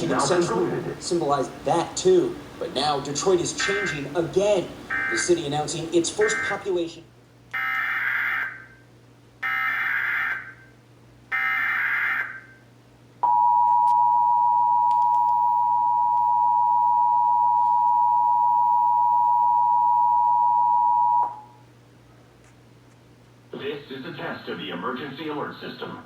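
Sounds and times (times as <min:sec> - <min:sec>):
steady dual tone alert signal: 0:13.2 - 0:21.6.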